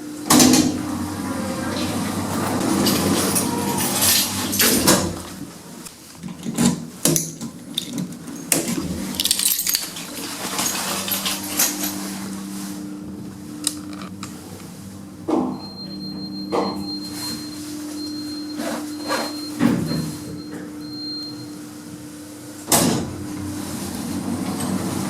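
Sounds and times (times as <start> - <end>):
lift humming: 0.2 - 6.0, 7.6 - 18.1, 23.1 - 25.0
lift car clicks and rattles: 0.3 - 5.6.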